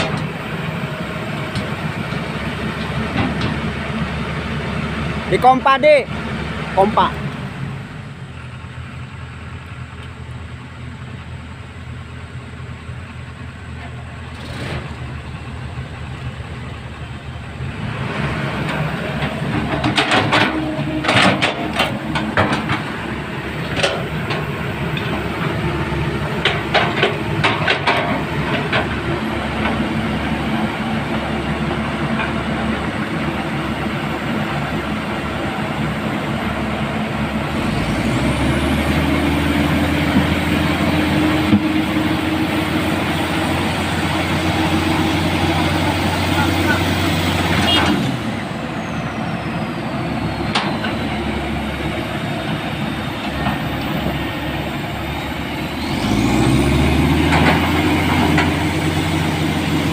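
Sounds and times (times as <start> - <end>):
diesel engine running: 0.0 - 59.9
metal clanks and knocks: 1.5 - 3.7, 19.1 - 25.6, 26.3 - 29.8.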